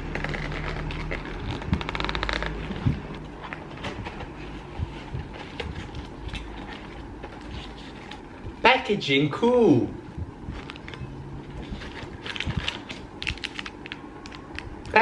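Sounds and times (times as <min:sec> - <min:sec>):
low hum: 0:00.0 - 0:08.7, 0:09.8 - 0:14.9
snack packaging crackling: 0:12.1 - 0:15.0.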